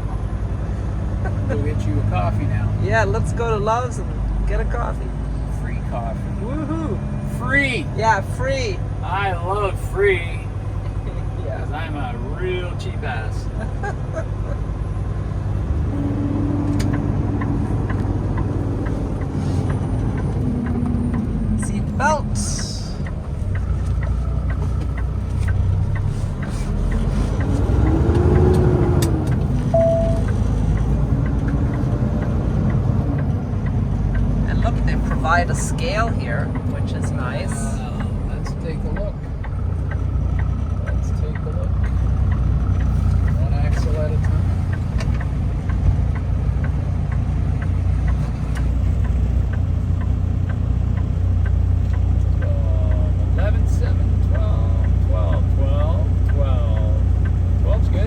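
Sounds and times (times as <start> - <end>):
diesel truck engine running: 0.0 - 58.0
turn signal clicking: 13.5 - 58.0
light ticking: 15.2 - 58.0.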